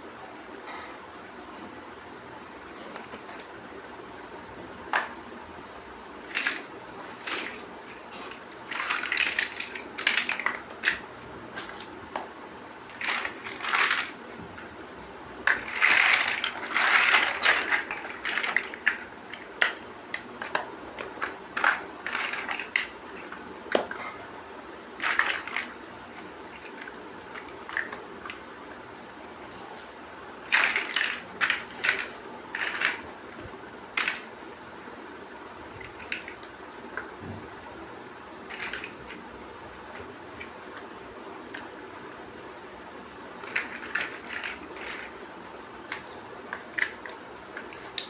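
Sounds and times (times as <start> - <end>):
plastic bricks clicking together: 6.2 - 11.1, 12.9 - 14.2, 15.4 - 24.0, 25.0 - 25.9, 30.5 - 33.0, 38.5 - 39.2, 43.4 - 45.1.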